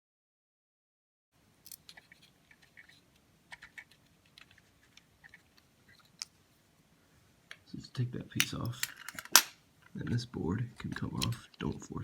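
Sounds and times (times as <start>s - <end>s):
plastic parts clicking: 8.4s - 10.0s, 10.8s - 11.8s.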